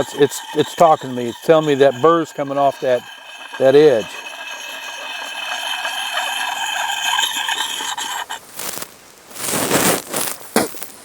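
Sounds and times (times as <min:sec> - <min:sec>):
stone scraping on steel: 0:00.0 - 0:08.4.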